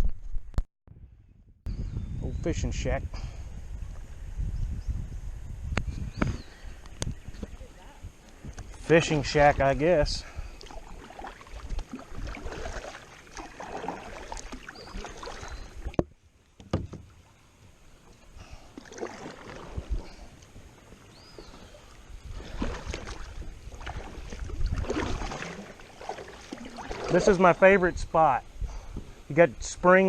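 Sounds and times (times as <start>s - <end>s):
paddle strokes splashing water: 8.4s - 27.8s.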